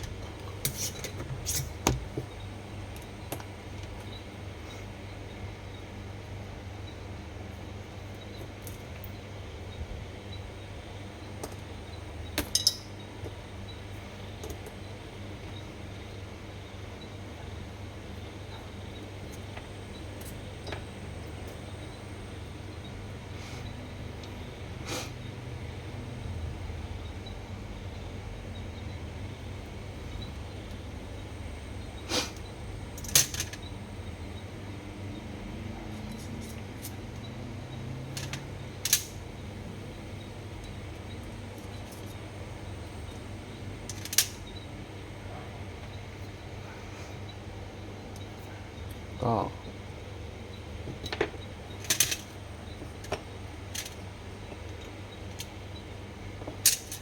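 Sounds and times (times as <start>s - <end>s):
steady low hum: 0.0s - 57.0s
metal parts clicking and clinking: 12.4s - 12.9s, 33.0s - 33.6s, 43.9s - 44.4s, 51.0s - 52.4s, 56.6s - 57.0s
small parts clicking: 51.8s - 52.3s, 56.6s - 57.0s.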